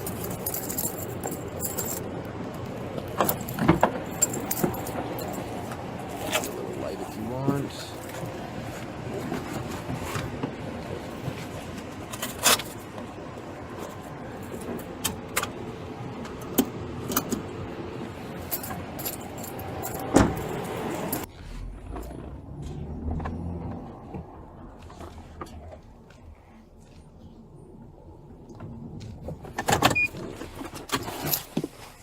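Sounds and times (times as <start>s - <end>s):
small metal items jangling: 0.0s - 2.1s, 3.1s - 6.7s, 18.4s - 21.3s.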